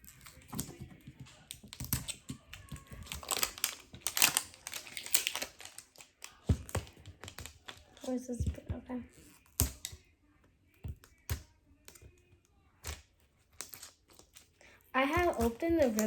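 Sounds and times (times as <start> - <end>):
plastic wrapper crinkling: 0.0 - 8.5, 12.8 - 14.6.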